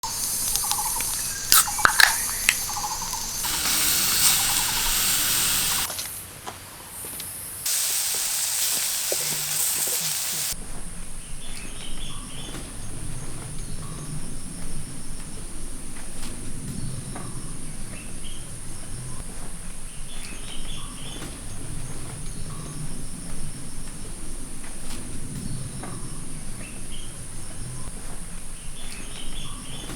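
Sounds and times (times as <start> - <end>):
high-pitched insect drone: 0.0 - 5.9
sharp clicks: 0.0 - 5.9
insect chirps: 0.0 - 6.2
loud hiss: 0.0 - 6.3, 7.3 - 10.6.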